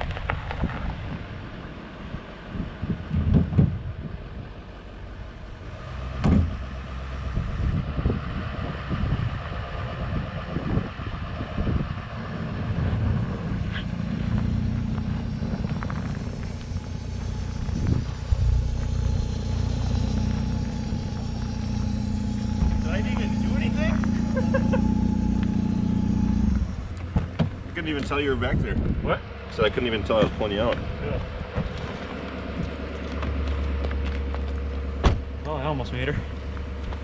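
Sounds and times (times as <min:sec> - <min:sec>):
vehicle engine running low: 0:00.0 - 0:37.0
loud knocks and bumps: 0:06.2 - 0:06.6.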